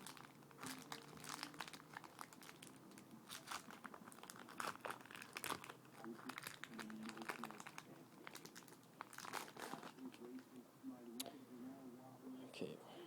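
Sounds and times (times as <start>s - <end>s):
packaging crinkling: 0.0s - 10.4s.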